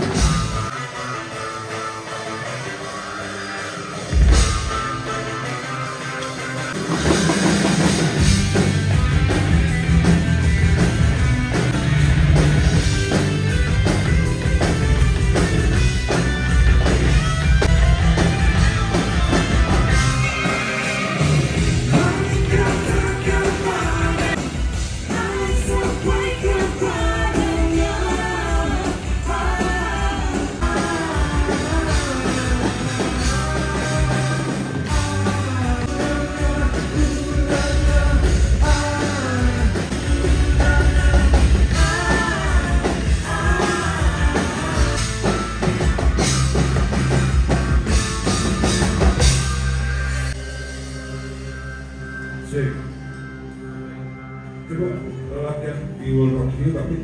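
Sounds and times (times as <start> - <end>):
drums: 0.0 - 57.0
rock band playing: 0.0 - 57.0
person singing: 19.9 - 45.5.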